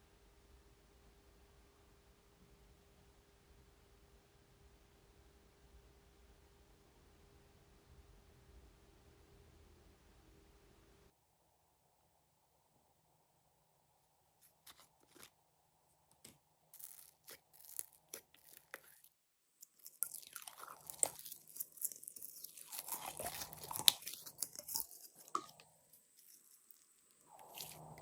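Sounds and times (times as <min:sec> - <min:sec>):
slime squished by hand: 0:16.2 - 0:28.0.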